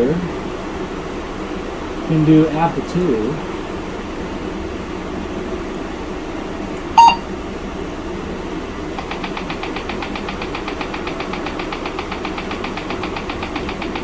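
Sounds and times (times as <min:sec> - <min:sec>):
steady low hum: 0:00.0 - 0:14.0
short computer boot beep: 0:07.0 - 0:07.2
rapid even clicking: 0:09.0 - 0:14.0.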